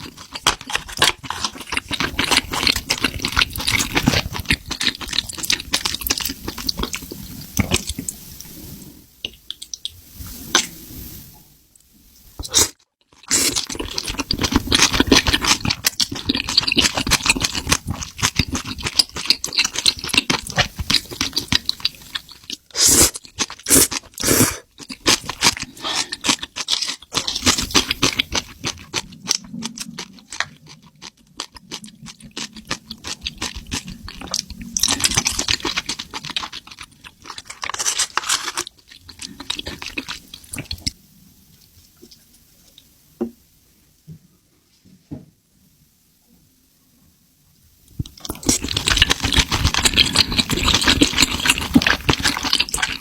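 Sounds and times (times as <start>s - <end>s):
chewing and crunching: 0.0s - 8.2s, 12.4s - 41.0s, 47.9s - 53.0s.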